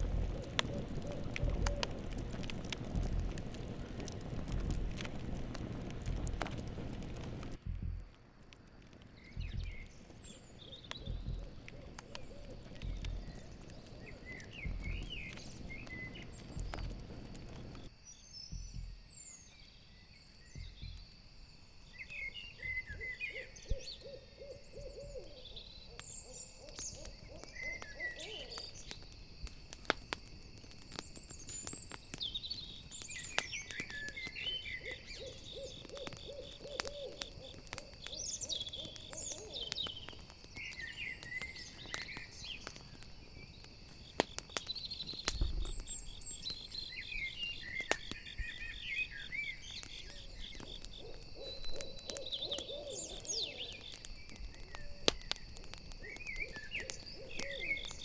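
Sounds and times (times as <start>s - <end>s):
owl hooting: 0.0s - 3.4s, 10.6s - 13.3s, 22.6s - 28.9s, 33.5s - 41.8s, 50.0s - 54.0s, 56.0s - 58.0s
crickets chirping: 0.0s - 8.1s, 8.7s - 58.0s
campfire crackling: 0.0s - 58.0s
high chirping calls: 30.4s - 55.4s.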